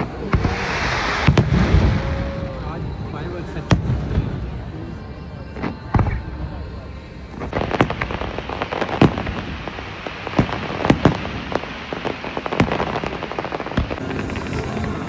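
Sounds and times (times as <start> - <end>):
fireworks sharp bangs: 0.0 - 2.3, 7.7 - 15.0
fireworks crackling: 0.0 - 4.4, 7.3 - 15.0.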